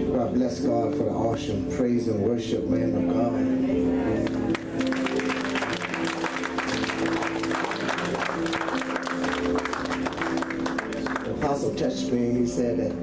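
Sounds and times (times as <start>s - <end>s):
keyboard chords: 0.0s - 13.0s
congregation clapping: 4.2s - 11.8s.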